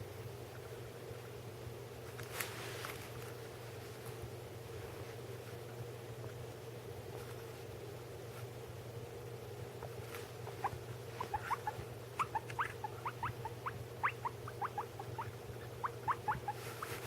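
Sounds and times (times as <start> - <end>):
guinea pig squeaking: 9.8 - 17.0.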